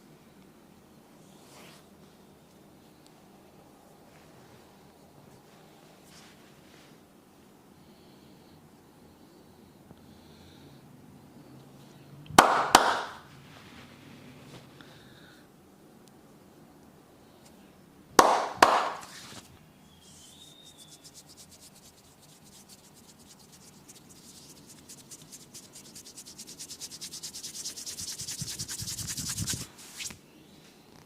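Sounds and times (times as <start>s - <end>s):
hands rubbing against skin: 18.2s - 30.2s.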